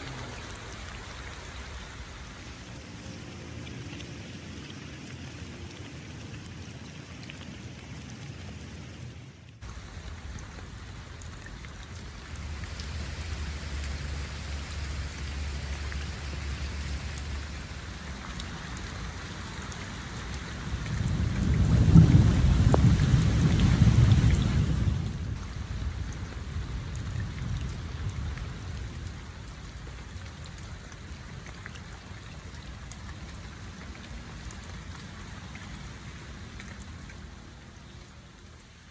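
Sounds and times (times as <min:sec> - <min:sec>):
rain falling: 0:00.0 - 0:38.9
low rumble: 0:09.6 - 0:19.3.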